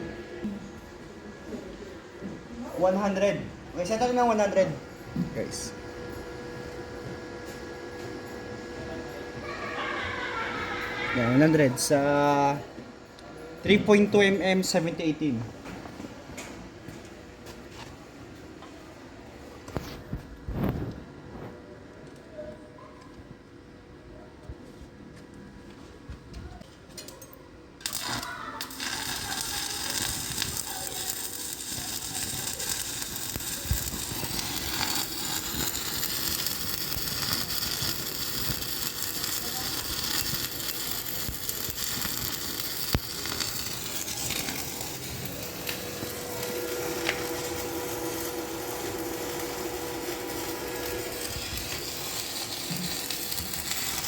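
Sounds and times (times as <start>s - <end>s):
welding arc crackling hiss: 27.8s - 54.0s
welding arc sharp pops: 27.8s - 54.0s.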